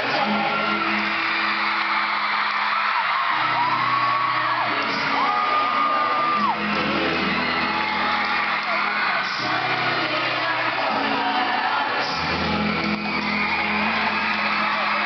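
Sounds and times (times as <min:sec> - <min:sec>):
fans screaming: 0:00.0 - 0:15.0
live pop rock band: 0:00.0 - 0:15.0.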